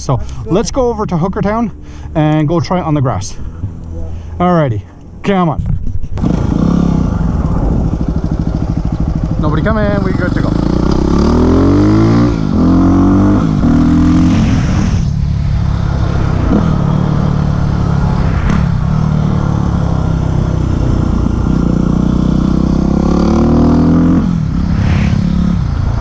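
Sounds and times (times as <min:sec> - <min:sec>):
motorcycle engine revving: 0:06.2 - 0:26.0.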